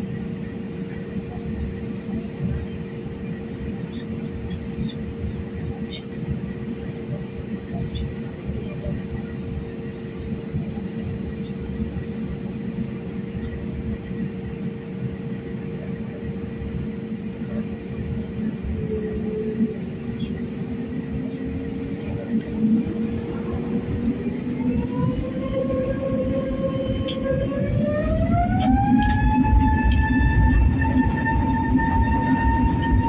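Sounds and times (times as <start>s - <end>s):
jet engines rumbling: 0.0s - 33.0s
rising engine whine: 10.3s - 33.0s.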